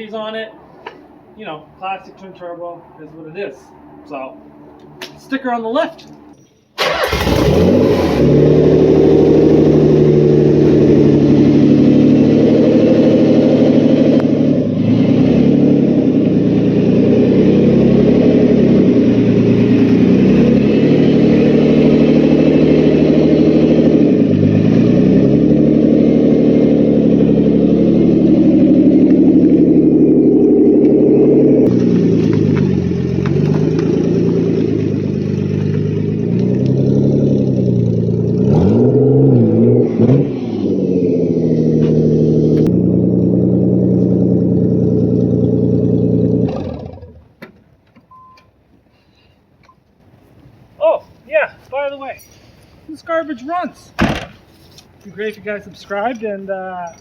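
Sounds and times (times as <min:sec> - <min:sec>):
car engine revving: 0:06.8 - 0:47.3.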